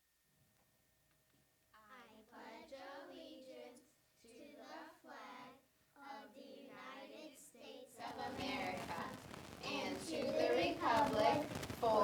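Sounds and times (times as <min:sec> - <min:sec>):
children reciting: 0:04.5 - 0:12.0.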